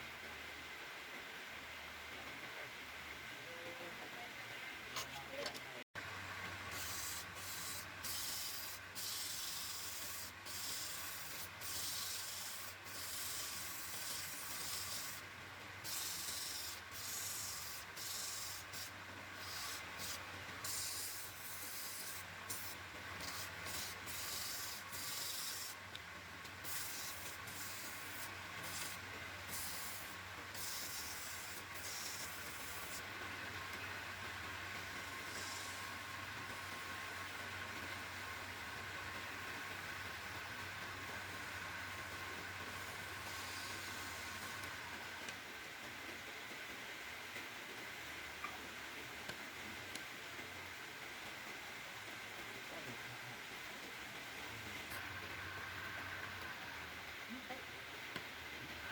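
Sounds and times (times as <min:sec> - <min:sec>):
sandpaper rubbing on wood: 0:06.8 - 0:15.2, 0:15.9 - 0:25.8, 0:26.7 - 0:33.0.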